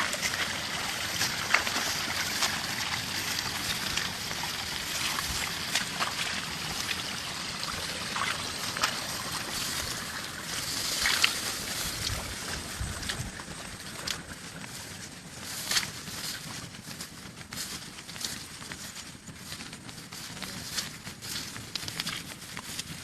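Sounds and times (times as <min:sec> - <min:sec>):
water trickling: 0:00.0 - 0:13.9
water splashes: 0:00.0 - 0:14.2.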